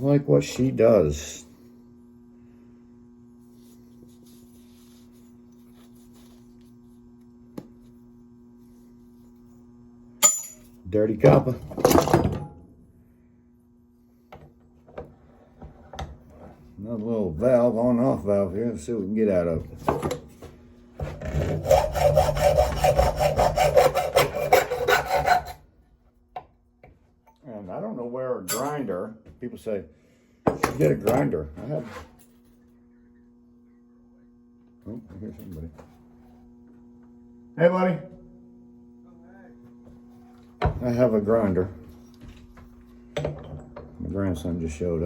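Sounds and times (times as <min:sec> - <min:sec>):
low electrical hum: 0:00.0 - 0:45.0
hacksaw cutting metal: 0:21.2 - 0:25.6.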